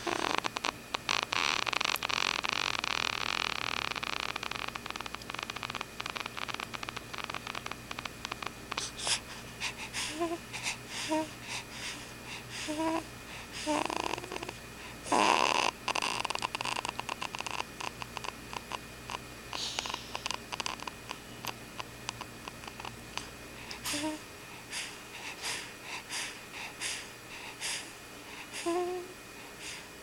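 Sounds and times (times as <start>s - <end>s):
loud harsh snore: 0.0s - 10.4s, 12.6s - 22.9s, 23.8s - 24.2s
crackly snoring breaths: 0.0s - 30.0s.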